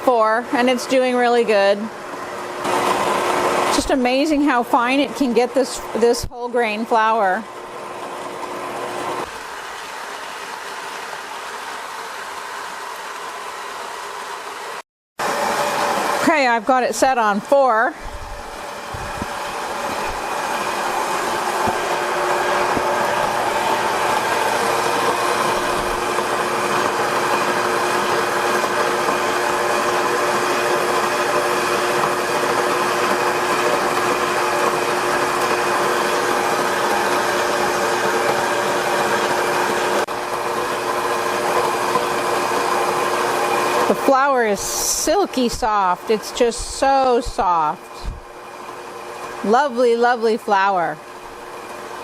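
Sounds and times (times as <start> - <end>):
electric grain mill grinding: 0.0 - 52.0.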